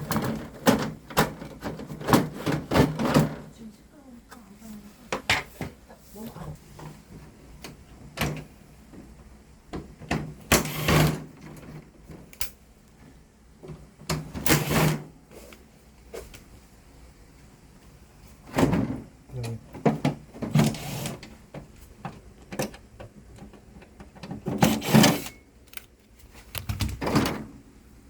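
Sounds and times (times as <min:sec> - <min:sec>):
parts scraping and sliding: 0:20.6 - 0:21.3, 0:24.5 - 0:26.6.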